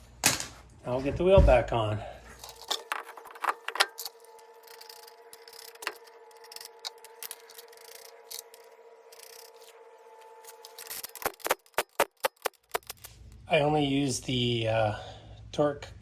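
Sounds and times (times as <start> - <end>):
faint steady whine: 0.8 - 11.6.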